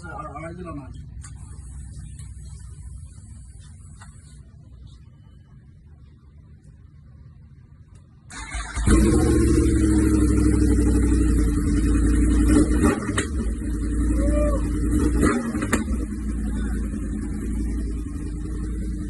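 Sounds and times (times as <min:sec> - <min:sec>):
motorcycle engine running: 0:08.8 - 0:19.0.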